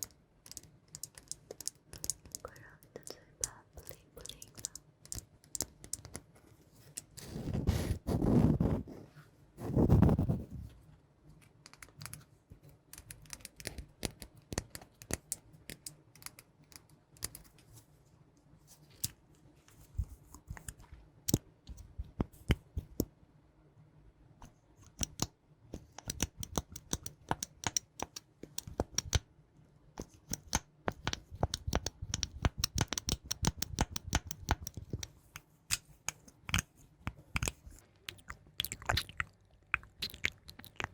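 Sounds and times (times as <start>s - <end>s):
crisp tapping or scratching: 9.6s - 10.6s
clicks and taps: 12.9s - 17.5s, 24.4s - 29.3s, 30.0s - 38.3s.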